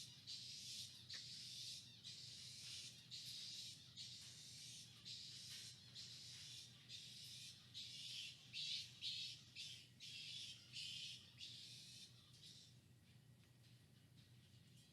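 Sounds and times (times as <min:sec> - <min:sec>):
low steady hum: 0:00.0 - 0:14.9.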